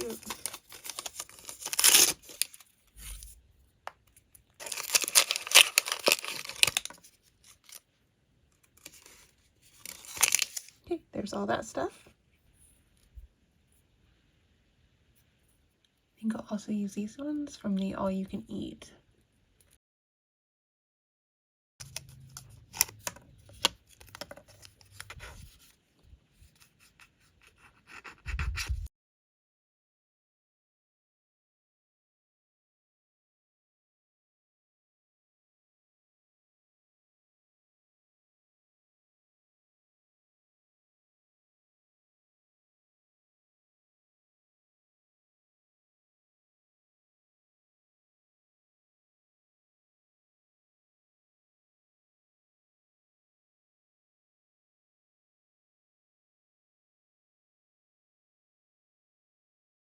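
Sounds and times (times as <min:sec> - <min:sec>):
packaging torn and crinkled: 0:00.0 - 0:03.2, 0:04.6 - 0:07.8, 0:09.8 - 0:10.7
plastic pieces clicking and scraping: 0:00.0 - 0:03.3, 0:04.1 - 0:07.8, 0:08.7 - 0:10.7, 0:21.8 - 0:25.2.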